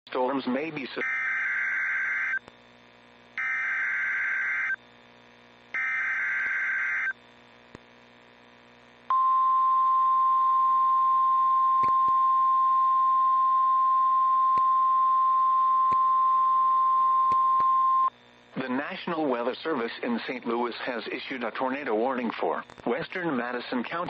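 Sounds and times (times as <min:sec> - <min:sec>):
steady single-pitch alarm tone: 0:01.0 - 0:02.4, 0:03.4 - 0:04.8, 0:05.7 - 0:07.2.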